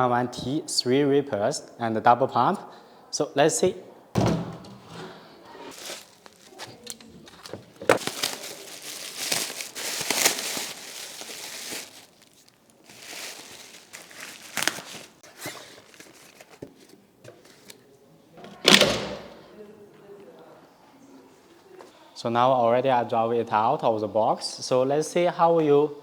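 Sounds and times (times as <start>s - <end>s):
packaging crinkling and tearing: 5.7s - 16.7s.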